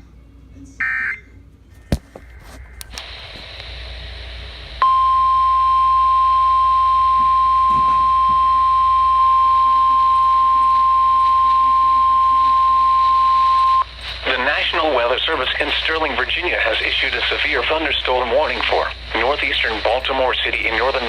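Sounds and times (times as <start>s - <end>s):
radio hiss: 1.9s - 4.9s, 11.4s - 21.0s
sharp clicks: 2.7s - 3.7s
steady high alarm tone: 4.8s - 13.9s.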